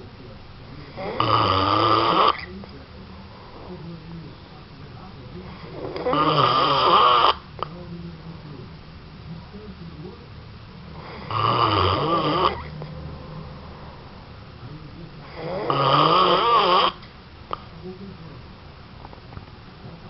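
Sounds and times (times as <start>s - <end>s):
person snoring heavily: 0.9s - 2.5s, 5.5s - 7.4s, 11.0s - 12.7s, 15.2s - 17.0s
quiet breathing: 2.3s - 6.1s.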